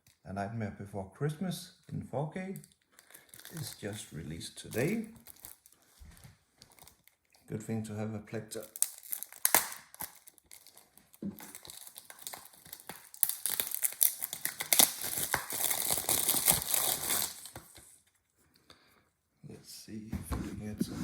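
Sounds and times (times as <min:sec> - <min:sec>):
plastic wrap crinkling and tearing: 0:02.5 - 0:07.5, 0:08.6 - 0:18.0.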